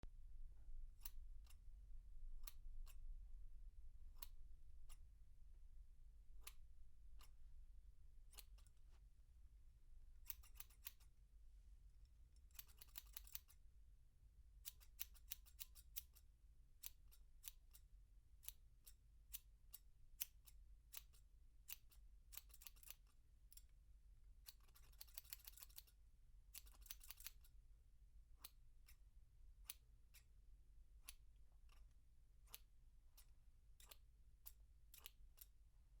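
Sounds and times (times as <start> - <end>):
scissors snipping: 10.2 - 11.1, 12.5 - 13.6, 14.6 - 16.2, 18.4 - 23.7, 24.4 - 27.5, 31.0 - 35.6.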